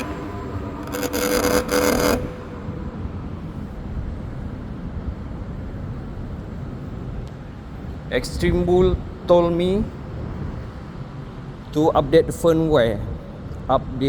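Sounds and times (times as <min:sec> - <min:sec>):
electric unicycle grinding whine: 0:00.0 - 0:04.2.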